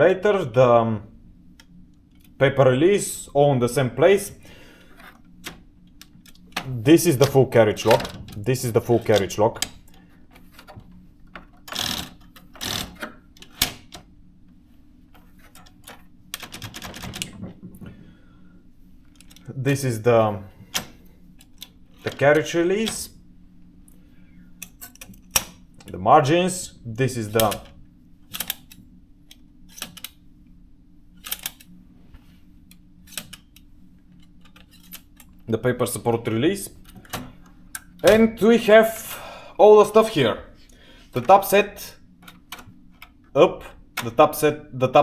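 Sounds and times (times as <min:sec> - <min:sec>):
typewriter carriage controls clicking: 0:05.4 - 0:10.8, 0:11.5 - 0:14.1, 0:15.6 - 0:17.4, 0:20.7 - 0:23.1, 0:27.3 - 0:28.8, 0:29.7 - 0:30.2, 0:31.2 - 0:31.7
typewriter carriage clunks: 0:06.6 - 0:09.8, 0:15.6 - 0:17.6
rapid typewriter clicks: 0:11.7 - 0:14.0, 0:16.4 - 0:17.4.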